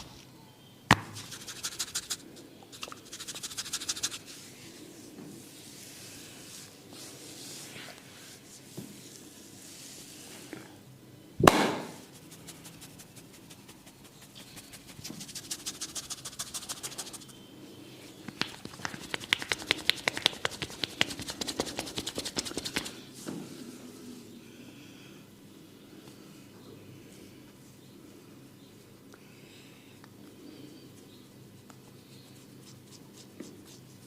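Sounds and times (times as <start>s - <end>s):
hands rubbing hair: 1.2s - 10.5s, 11.8s - 17.3s, 18.3s - 23.0s
loud thump: 11.4s - 12.0s
crisp clicks of hair cracking: 18.3s - 21.2s.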